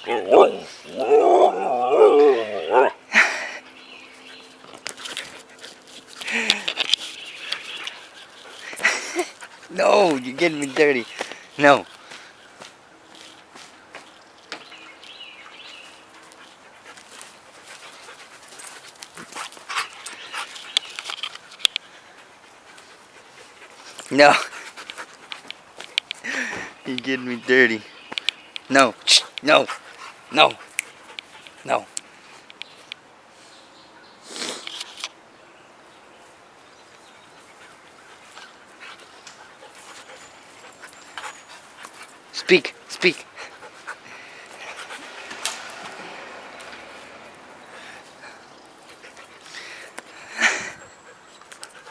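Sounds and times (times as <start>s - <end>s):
puppy whining: 0.0s - 3.1s
puppy panting: 2.6s - 13.3s, 15.5s - 27.5s, 28.6s - 32.6s, 37.1s - 51.9s.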